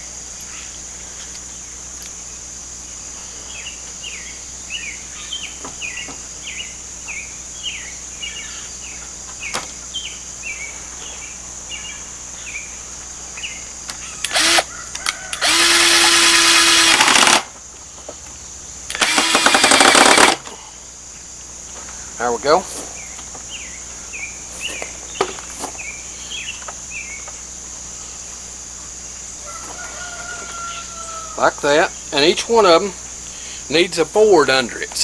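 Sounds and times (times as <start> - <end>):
high insect drone: 0.0 - 35.0
cordless drill driving screw: 14.2 - 14.7, 15.3 - 17.4, 18.9 - 20.4
birds chirping: 20.6 - 35.0.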